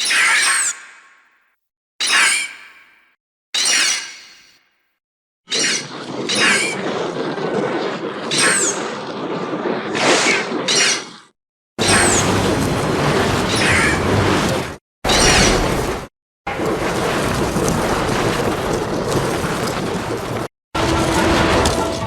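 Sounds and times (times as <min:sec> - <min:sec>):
rough crackling rumble: 0:05.9 - 0:10.7, 0:11.8 - 0:22.0.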